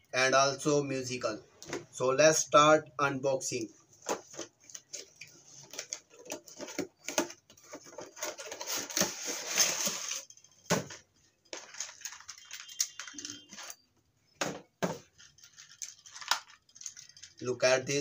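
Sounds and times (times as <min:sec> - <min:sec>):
packaging rustling and crinkling: 0:04.0 - 0:13.8.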